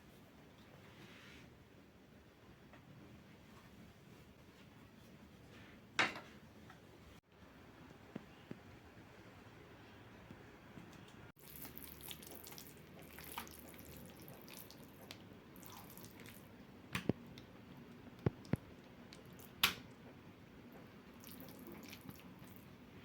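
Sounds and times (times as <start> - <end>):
faint water dripping: 10.9 - 20.1, 20.7 - 22.7.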